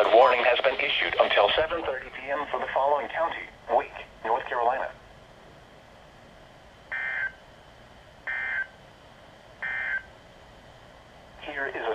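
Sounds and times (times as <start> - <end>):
digital data tone bursts: 6.9 - 7.4, 8.3 - 8.7, 9.6 - 10.1.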